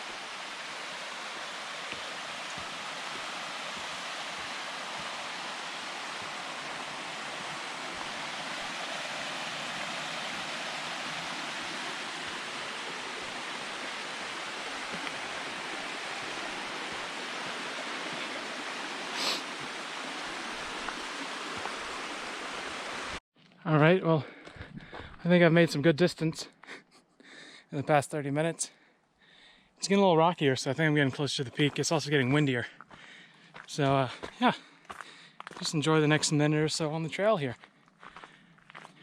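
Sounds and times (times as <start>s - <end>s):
stream running over rocks: 0.0s - 23.2s.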